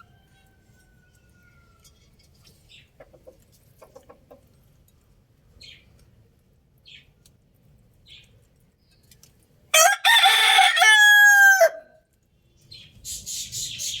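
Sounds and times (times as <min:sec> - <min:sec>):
rooster crowing: 0:00.0 - 0:01.9, 0:09.7 - 0:12.0
small birds chirping: 0:00.0 - 0:04.5, 0:05.5 - 0:06.2, 0:06.8 - 0:07.3, 0:07.9 - 0:09.4, 0:12.3 - 0:14.0.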